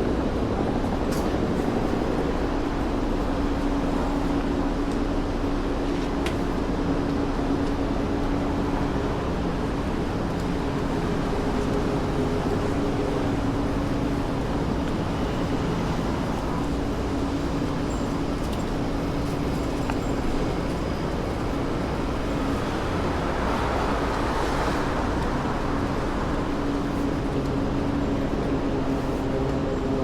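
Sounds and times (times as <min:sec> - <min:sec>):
low engine hum: 0:00.0 - 0:30.0
road noise from passing cars: 0:00.0 - 0:30.0
vehicle passing by: 0:21.6 - 0:27.2.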